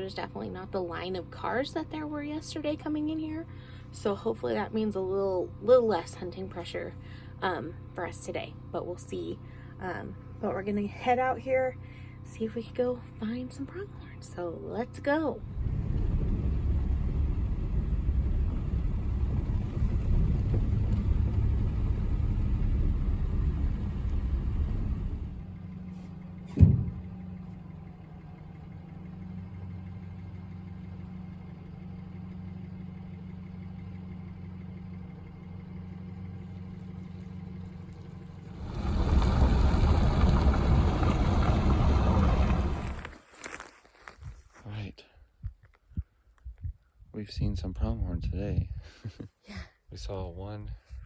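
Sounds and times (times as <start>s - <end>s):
truck engine and road rumble: 0.0s - 51.0s
sharp knock: 26.5s - 27.0s.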